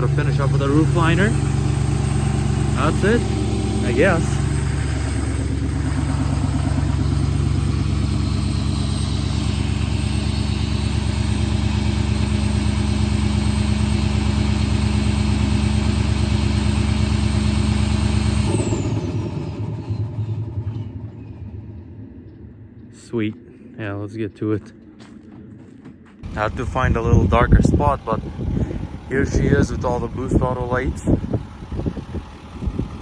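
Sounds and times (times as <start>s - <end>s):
quiet rumble: 0.0s - 12.5s, 19.7s - 33.0s
truck engine idling: 0.0s - 23.0s, 26.2s - 33.0s
high whine sliding downward: 0.0s - 23.1s.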